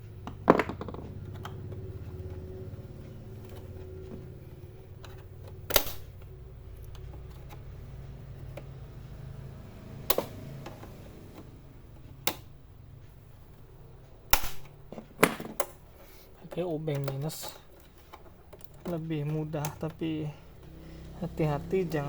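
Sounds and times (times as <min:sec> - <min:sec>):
low steady hum: 0:00.0 - 0:22.0
sharp plastic clicks: 0:14.3 - 0:20.7.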